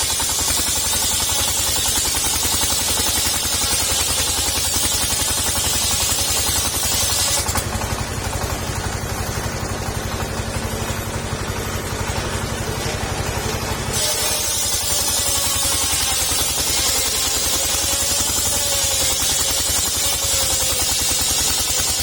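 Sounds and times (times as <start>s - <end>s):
saw blade hissing through wood: 0.0s - 7.6s, 12.7s - 22.0s
petrol engine running: 0.0s - 20.7s.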